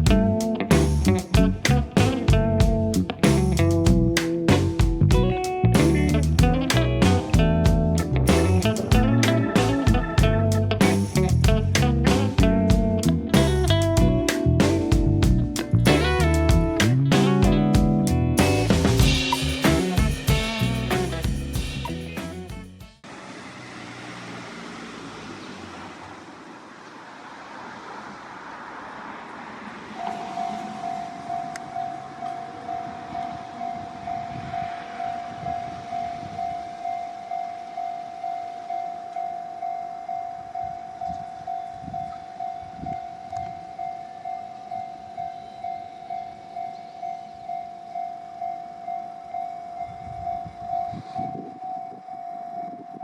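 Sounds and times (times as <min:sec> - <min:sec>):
rushing noise: 0:00.0 - 0:37.9
level crossing warning bell: 0:29.9 - 0:53.0.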